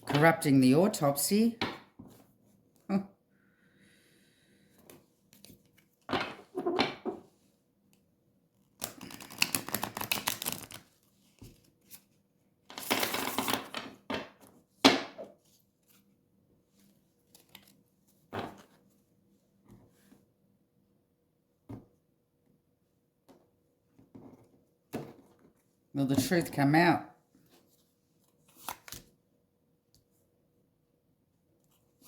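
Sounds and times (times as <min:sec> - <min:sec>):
cards riffle shuffling: 0:08.8 - 0:10.9.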